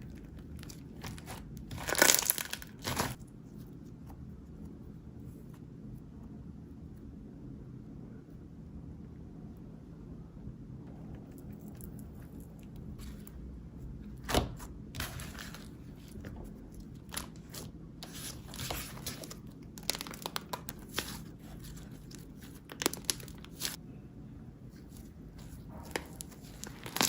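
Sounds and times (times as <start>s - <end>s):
slime crackling and popping: 0.4s - 3.2s, 18.5s - 23.8s, 25.9s - 27.0s.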